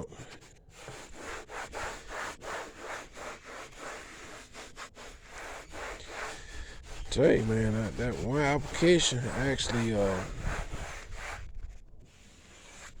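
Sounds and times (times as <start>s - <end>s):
cloth rubbing plastic lid: 0.0s - 13.0s.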